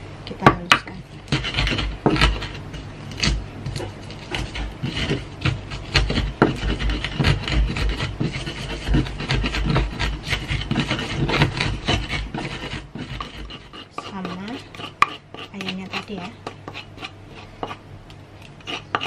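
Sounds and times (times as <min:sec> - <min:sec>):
pestle grinding in a mortar: 0:00.3 - 0:19.0.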